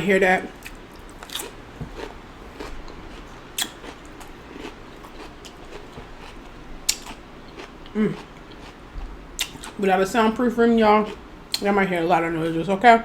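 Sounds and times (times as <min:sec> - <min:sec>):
chewing and wet mouth sounds: 0:00.5 - 0:09.8, 0:10.9 - 0:11.7
mouth smacks and clicks: 0:03.6 - 0:06.1, 0:06.9 - 0:08.7.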